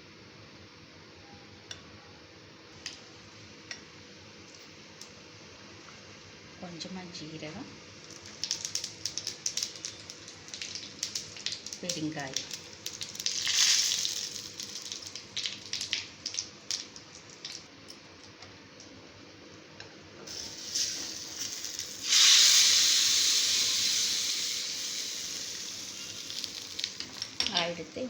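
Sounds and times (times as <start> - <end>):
hot oil sizzling in a pan: 7.9 - 17.8, 20.3 - 28.0
mustard seeds popping: 8.3 - 17.6, 25.5 - 27.7.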